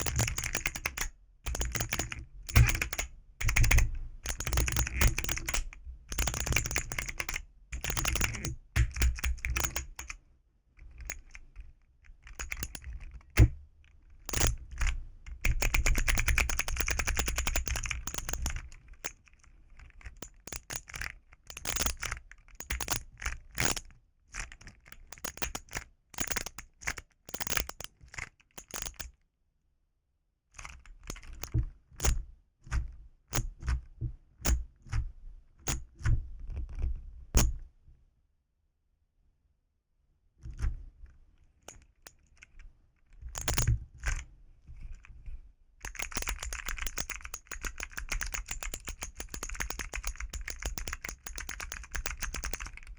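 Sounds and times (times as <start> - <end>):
keyboard toy key clicks: 0.0 - 5.6, 28.6 - 29.1, 45.9 - 52.9.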